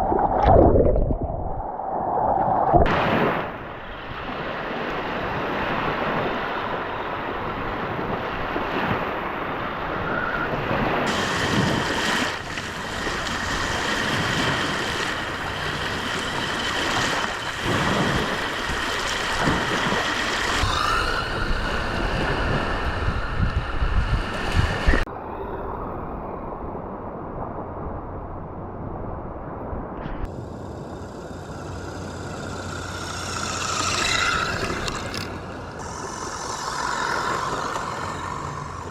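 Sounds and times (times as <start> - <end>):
wind buffeting microphone: 0.0 - 38.9
lake waves washing: 1.7 - 25.0, 30.3 - 38.9
toy truck motor whine: 11.1 - 22.9, 30.3 - 38.9.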